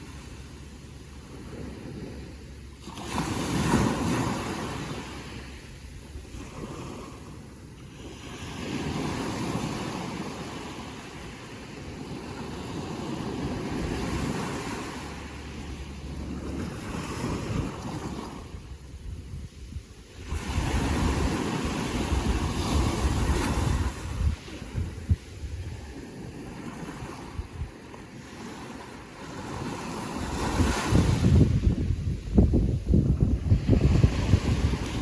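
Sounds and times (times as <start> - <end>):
ocean waves breaking: 0.0 - 35.0.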